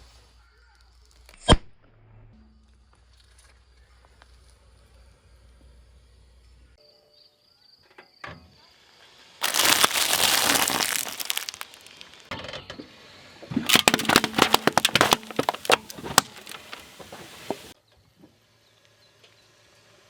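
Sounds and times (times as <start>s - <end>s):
objects crunching under car tyre: 9.4s - 12.3s, 13.7s - 17.8s.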